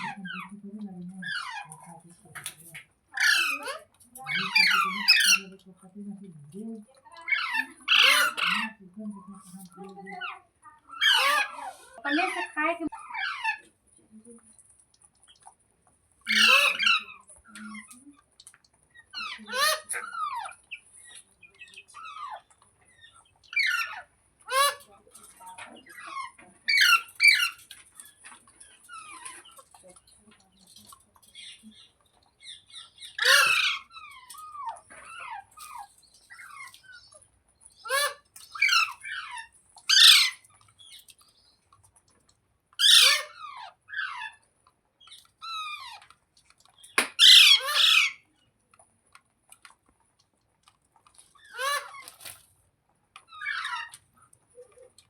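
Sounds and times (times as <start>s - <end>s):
parakeet squawking: 3.2s - 5.5s, 7.2s - 8.8s, 10.1s - 13.6s, 16.3s - 17.3s, 25.9s - 27.7s, 32.4s - 37.2s, 37.8s - 40.5s, 42.8s - 44.4s, 46.8s - 48.2s, 51.4s - 52.1s
parakeet soft chattering: 19.0s - 41.6s.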